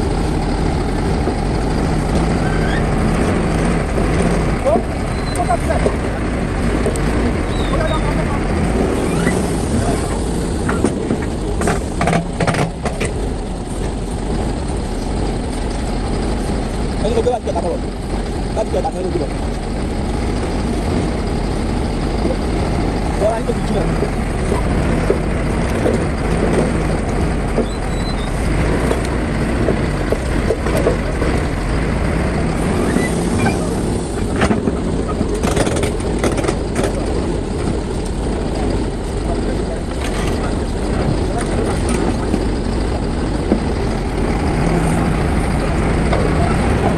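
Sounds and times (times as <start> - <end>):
excavator diesel engine running: 0.0 - 46.9
metal knocks and clanks: 10.6 - 13.3
sharp knocks and clatters: 10.6 - 13.3, 34.3 - 38.8.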